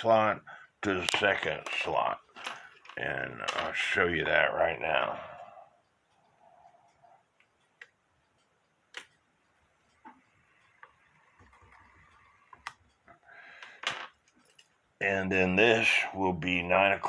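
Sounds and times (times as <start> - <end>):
clock movement clicking: 0.0 - 16.9.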